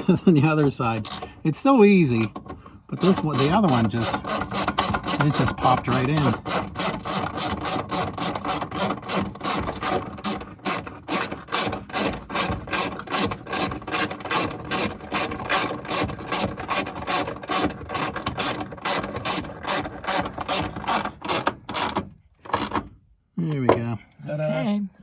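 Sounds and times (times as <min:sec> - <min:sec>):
hand ratchet clicking: 0:00.9 - 0:01.4, 0:02.2 - 0:22.8.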